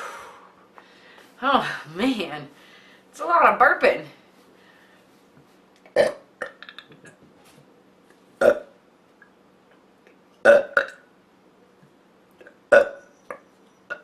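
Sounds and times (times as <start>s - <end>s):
woman burping: 6.0s - 7.2s, 8.4s - 8.7s, 12.4s - 13.0s.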